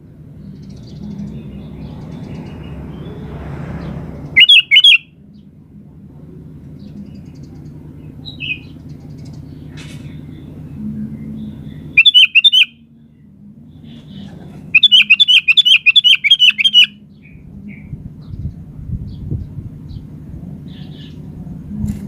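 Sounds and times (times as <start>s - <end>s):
low hum: 0.0s - 4.4s, 5.0s - 16.0s, 16.9s - 22.0s
bird chirping rapidly: 3.8s - 5.1s, 8.2s - 9.7s, 11.9s - 12.8s, 14.7s - 17.4s.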